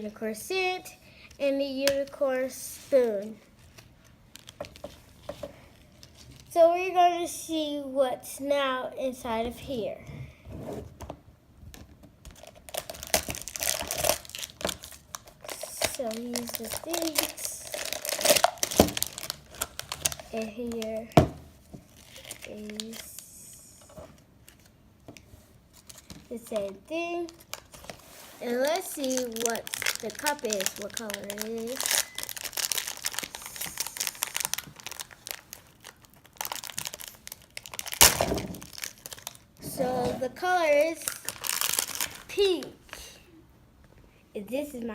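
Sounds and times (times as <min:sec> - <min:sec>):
plastic packaging crinkling: 0:03.6 - 0:05.0, 0:12.2 - 0:21.2, 0:21.8 - 0:23.2, 0:25.7 - 0:39.7, 0:40.8 - 0:42.7
plastic crackles and clicks: 0:11.7 - 0:21.1, 0:28.6 - 0:39.5.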